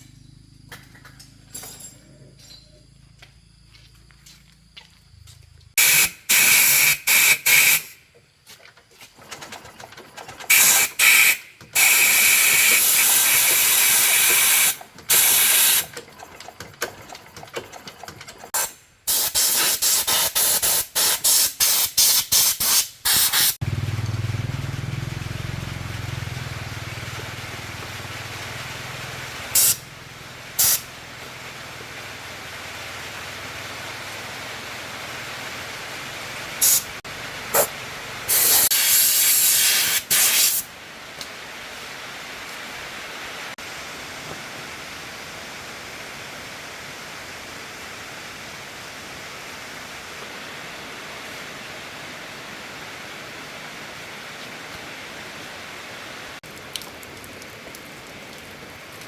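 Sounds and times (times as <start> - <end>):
pressurised spray hissing: 5.8 - 8.0, 10.5 - 15.8, 18.6 - 23.6, 29.5 - 29.8, 30.6 - 30.9, 36.6 - 37.7, 38.3 - 40.7.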